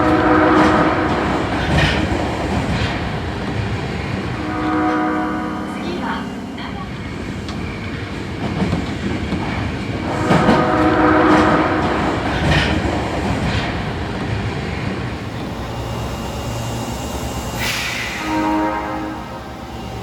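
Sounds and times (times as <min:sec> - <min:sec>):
train horn blowing: 0:00.0 - 0:01.3, 0:04.3 - 0:06.9, 0:10.1 - 0:12.0, 0:17.6 - 0:19.6
running train noise: 0:00.0 - 0:20.0.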